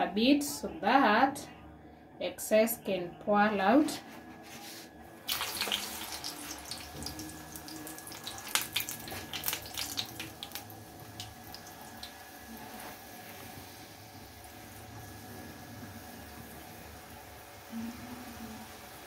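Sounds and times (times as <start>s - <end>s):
oil sizzling and popping: 5.2s - 15.3s.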